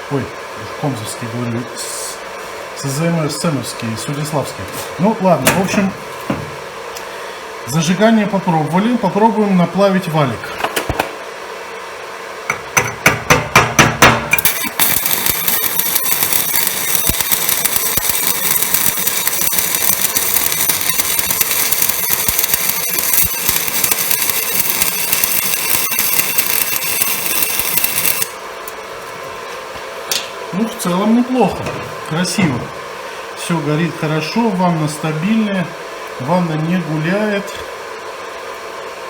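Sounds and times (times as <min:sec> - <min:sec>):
arc welding crackling hiss: 0:12.5 - 0:31.4.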